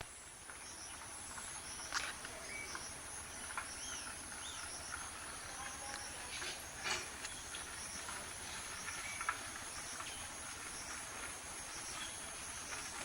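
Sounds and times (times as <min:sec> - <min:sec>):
birds chirping softly: 0:00.0 - 0:13.0.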